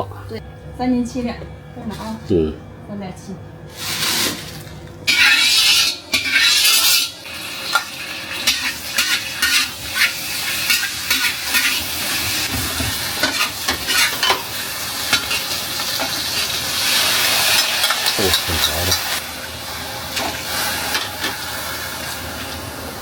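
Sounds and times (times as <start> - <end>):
food sizzling in a pot: 3.7 - 23.0
utensil clinking and scraping pot: 3.8 - 16.5.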